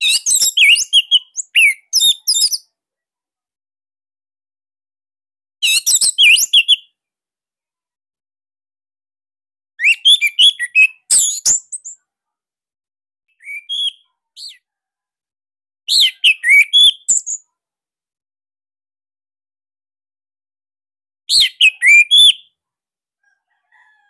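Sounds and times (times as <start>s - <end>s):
thrush whistled song: 0.0s - 2.7s, 5.6s - 6.9s, 9.8s - 12.0s, 13.3s - 14.6s, 15.9s - 17.4s, 21.3s - 22.6s.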